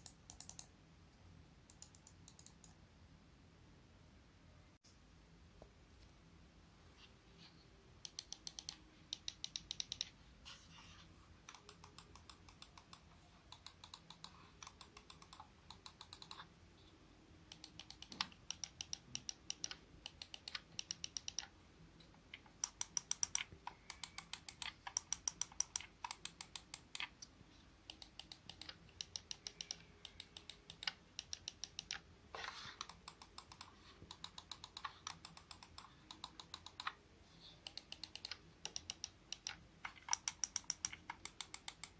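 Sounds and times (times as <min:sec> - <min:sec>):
mouse buttons clicking: 0:00.0 - 0:00.7, 0:01.7 - 0:02.8, 0:08.0 - 0:10.2, 0:11.4 - 0:16.5, 0:17.5 - 0:37.0, 0:37.6 - 0:41.9.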